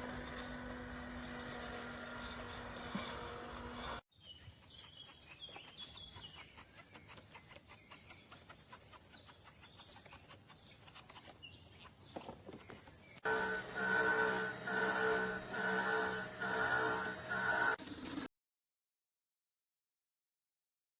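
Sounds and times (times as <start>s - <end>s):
birds chirping: 3.8s - 17.8s
machine hum: 13.2s - 18.3s.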